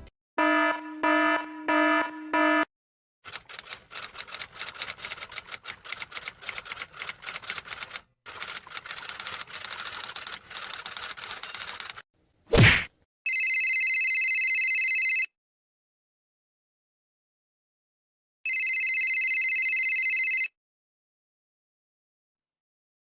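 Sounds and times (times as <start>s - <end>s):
short buzzer beeps: 0.4s - 2.7s
rapid typing on keyboard: 3.3s - 12.0s.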